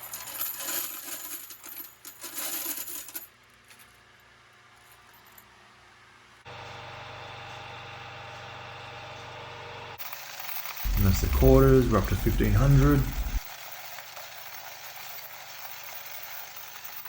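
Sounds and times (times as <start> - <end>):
coins clinking and jingling: 0.0 - 4.0, 10.0 - 17.0
machine humming: 10.9 - 13.4.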